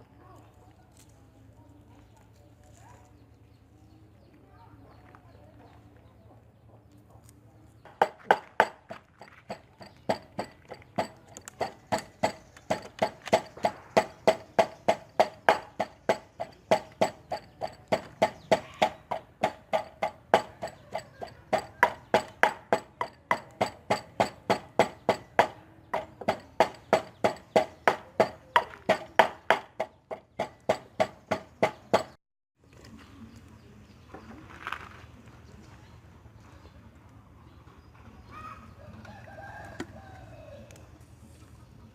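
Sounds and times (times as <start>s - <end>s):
rhythmic sharp ringing knocks: 7.9s - 32.2s.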